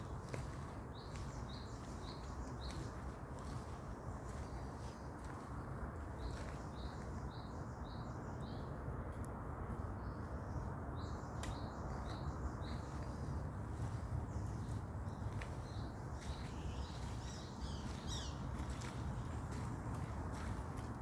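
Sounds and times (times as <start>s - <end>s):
bird chirping: 14.4s - 18.9s.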